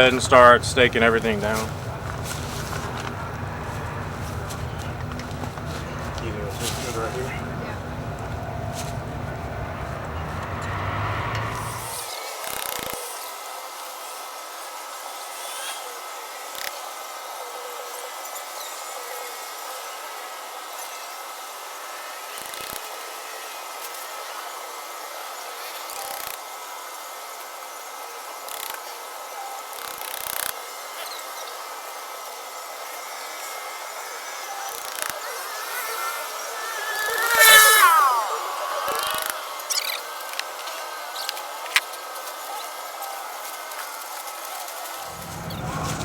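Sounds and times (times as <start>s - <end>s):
faint high hum: 0.0s - 12.2s.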